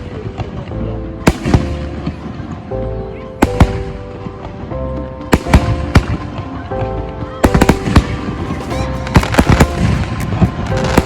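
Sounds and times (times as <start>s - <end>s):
background music with sustained chords: 0.0s - 11.0s
fireworks bangs: 7.4s - 11.0s.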